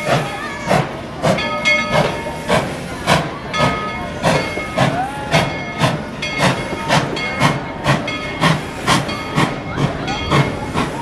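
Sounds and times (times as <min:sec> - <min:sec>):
steam hiss: 0:00.0 - 0:11.0
steam locomotive chuffing: 0:00.0 - 0:11.0.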